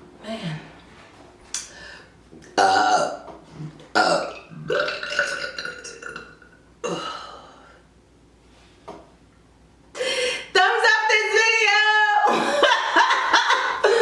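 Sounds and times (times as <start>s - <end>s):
woman burping: 2.6s - 3.3s, 3.9s - 7.4s, 12.3s - 12.8s.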